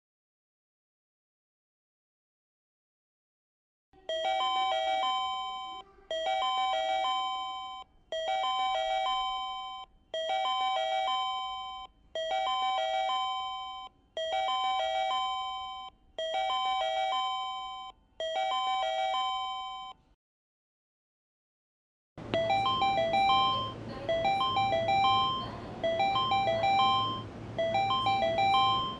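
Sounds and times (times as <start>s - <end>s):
electronic ding-dong platform chime: 22.2s - 28.9s.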